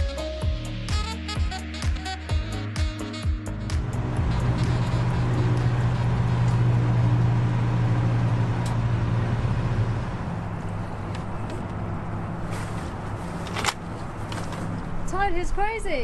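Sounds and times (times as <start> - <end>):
low engine hum: 3.4 - 16.0.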